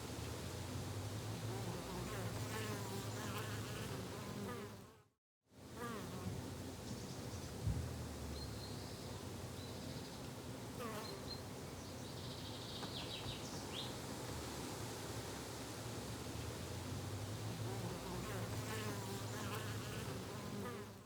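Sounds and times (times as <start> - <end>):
insects buzzing: 17.5 - 21.0.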